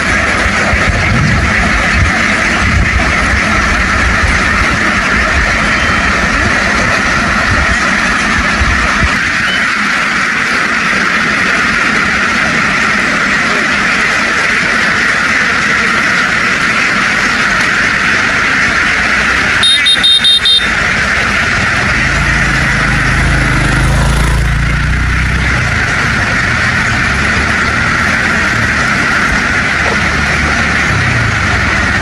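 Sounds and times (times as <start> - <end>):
deeper engine note: 0.0 - 9.6, 15.5 - 32.0
engine running: 0.0 - 32.0
rapid beeps: 9.4 - 9.7, 19.6 - 20.8.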